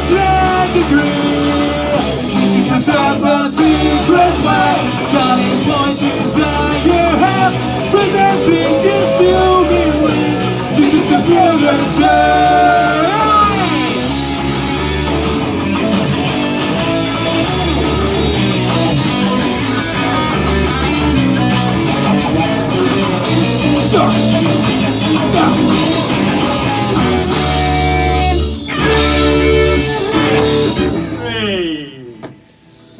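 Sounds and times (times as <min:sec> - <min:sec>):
rock band playing: 0:00.0 - 0:32.8
person singing: 0:03.6 - 0:13.8.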